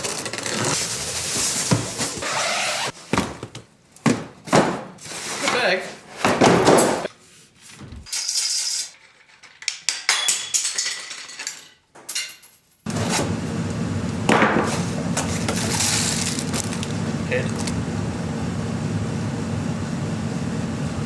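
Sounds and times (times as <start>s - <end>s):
steady low hum: 12.9s - 21.0s.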